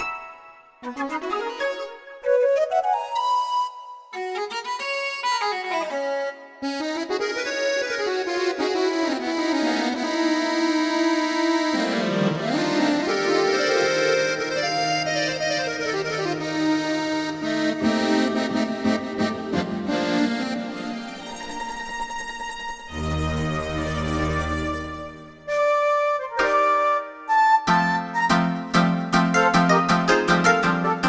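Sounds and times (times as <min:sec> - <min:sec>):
synthesizer keyboard phrase: 0:08.7 - 0:21.3.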